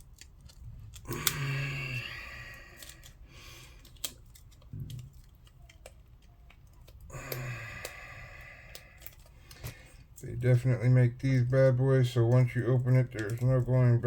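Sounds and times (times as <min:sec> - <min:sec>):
plastic packaging clicks and snips: 0:00.0 - 0:01.7, 0:02.8 - 0:08.0, 0:08.7 - 0:09.8, 0:12.3 - 0:13.8.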